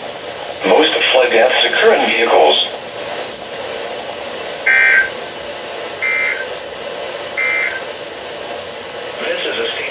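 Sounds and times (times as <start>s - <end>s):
radio hiss: 0.4s - 8.1s, 9.0s - 9.9s
digital data tone bursts: 4.7s - 5.2s, 6.0s - 6.5s, 7.4s - 7.9s.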